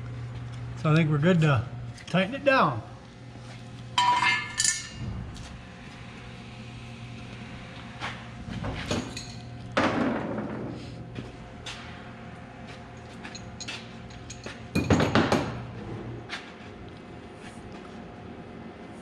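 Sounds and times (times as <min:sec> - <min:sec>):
steady low hum: 0:00.0 - 0:19.0
metal tools clanking: 0:04.0 - 0:05.0.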